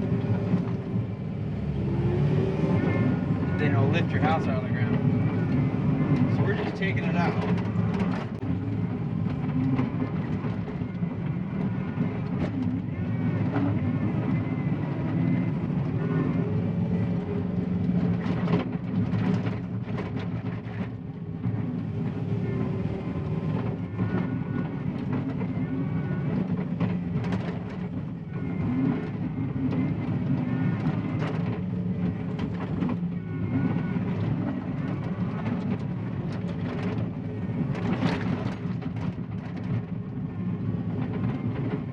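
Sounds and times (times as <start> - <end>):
diesel engine running under load: 0.0 - 41.9.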